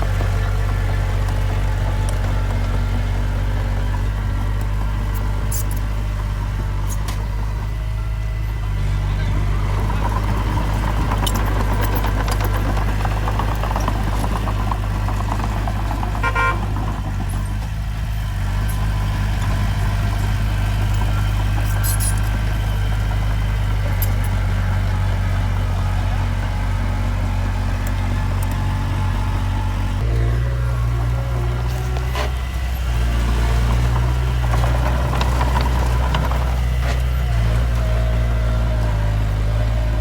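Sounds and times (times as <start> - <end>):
diesel engine of heavy machinery: 0.0 - 40.0
horn toot: 16.2 - 16.8.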